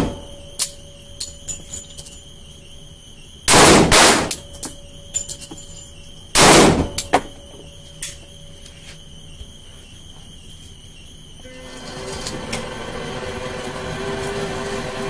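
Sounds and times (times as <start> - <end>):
pistol shots: 3.5 - 4.4, 6.4 - 7.2.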